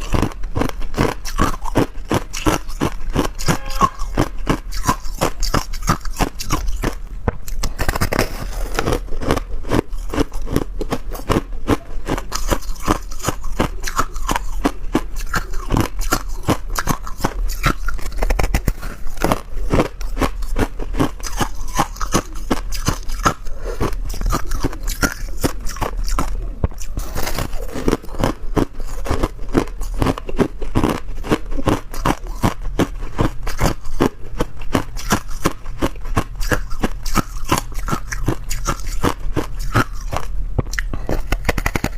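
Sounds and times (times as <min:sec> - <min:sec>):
person crunching ice: 0:00.0 - 0:41.9.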